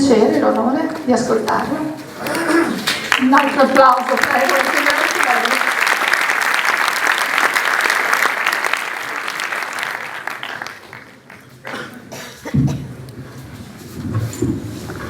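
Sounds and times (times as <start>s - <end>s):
audience applauding: 2.2s - 11.8s.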